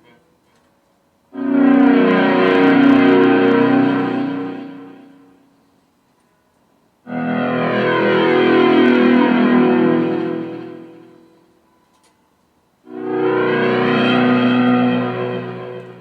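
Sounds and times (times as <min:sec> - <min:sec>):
shimmering electronic chord tone: 0:01.4 - 0:05.5, 0:07.1 - 0:11.4, 0:12.9 - 0:16.0.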